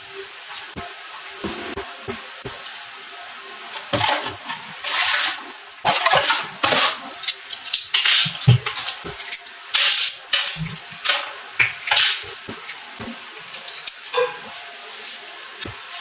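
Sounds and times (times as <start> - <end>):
containers clattering: 3.7 - 16.0
water splashing: 3.7 - 16.0.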